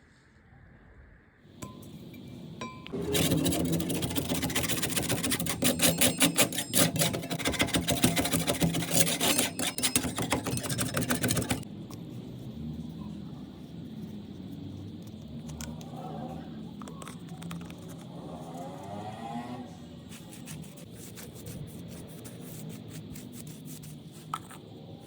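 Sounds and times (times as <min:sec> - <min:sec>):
abrasive scraping on sheet metal: 0:01.6 - 0:11.6.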